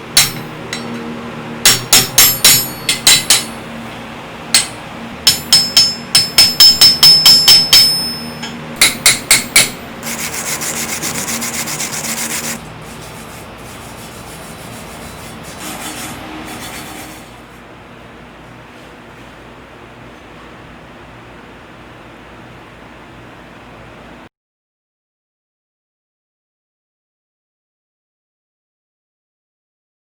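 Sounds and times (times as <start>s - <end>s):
hammer tapping metal: 0.0s - 3.7s, 4.5s - 12.6s
rasping strokes: 9.3s - 17.6s.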